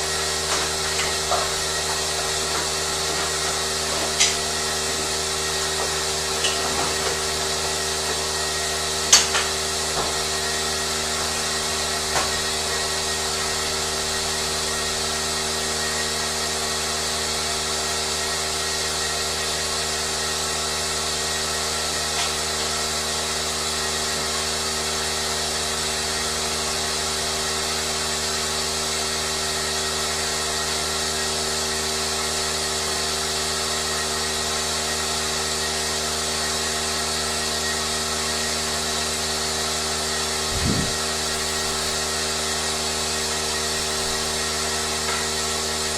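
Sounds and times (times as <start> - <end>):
steady machine whirr: 40.2 - 44.9
sharp click: 40.6 - 42.1, 43.8 - 44.4.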